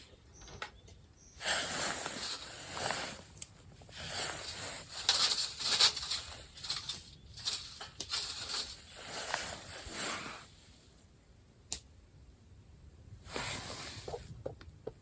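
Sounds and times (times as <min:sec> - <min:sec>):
fabric rustling and scraping: 0:01.4 - 0:10.5, 0:13.3 - 0:14.3.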